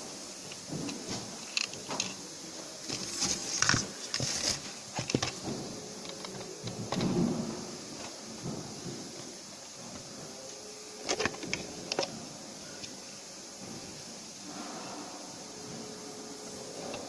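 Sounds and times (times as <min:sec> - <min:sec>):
hissy scrape: 0:00.2 - 0:10.5, 0:13.6 - 0:17.0
small parts clicking and knocking: 0:00.3 - 0:08.8, 0:11.0 - 0:13.0.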